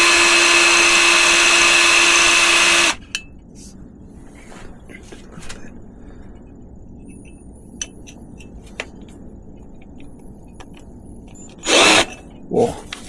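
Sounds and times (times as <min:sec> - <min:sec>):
drill whining: 0:00.0 - 0:03.0, 0:11.5 - 0:12.2.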